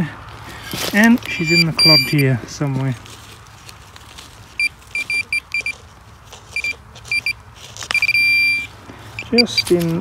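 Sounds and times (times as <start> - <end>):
metal detector beeping: 0.6 - 2.3, 4.6 - 5.8, 6.5 - 10.0.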